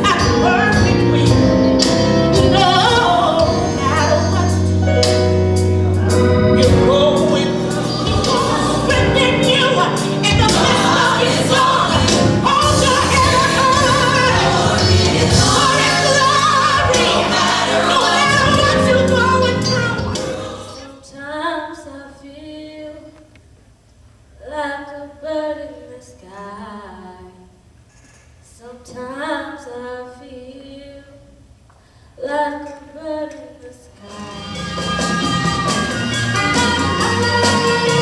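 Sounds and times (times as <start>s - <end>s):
gospel choir with accompaniment: 0.0s - 21.1s, 34.0s - 38.0s
woman singing unaccompanied: 6.6s - 20.2s.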